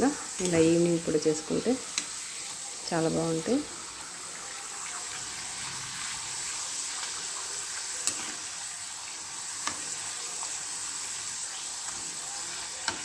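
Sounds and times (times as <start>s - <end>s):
potato slices sizzling in oil: 0.0s - 13.0s.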